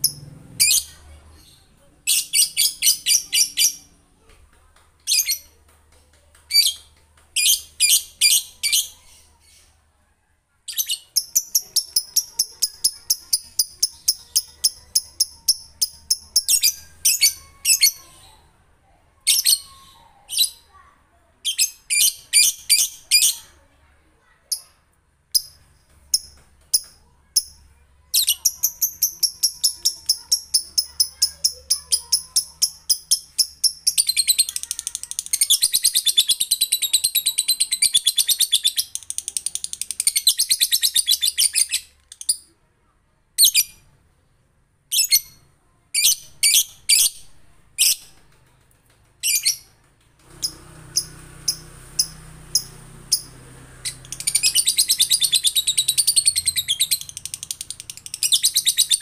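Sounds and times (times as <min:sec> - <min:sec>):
lovebird chirping rapidly: 0:00.0 - 0:03.9, 0:06.5 - 0:09.7, 0:10.7 - 0:18.4, 0:21.4 - 0:23.5, 0:28.2 - 0:42.5, 0:44.9 - 0:45.4, 0:46.0 - 0:48.1, 0:50.4 - 0:59.0.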